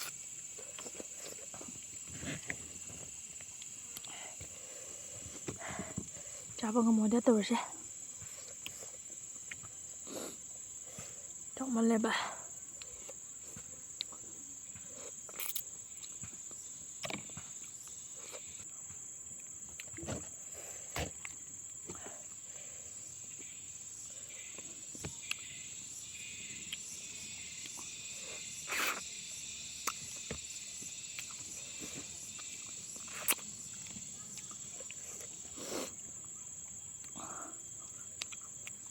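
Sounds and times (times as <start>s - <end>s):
insect chirring: 0.0s - 38.9s
chewing clicks and smacks: 38.2s - 38.9s.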